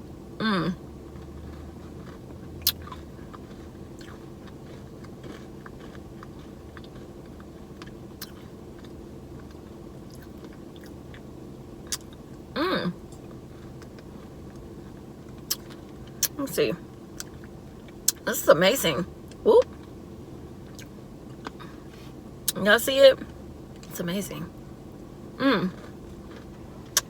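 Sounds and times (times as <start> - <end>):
low background hum: 0.0 - 27.0
person humming: 0.4 - 0.8, 12.6 - 12.9, 25.4 - 25.7
person chewing and biting: 1.1 - 11.3, 11.9 - 12.3, 25.7 - 27.0.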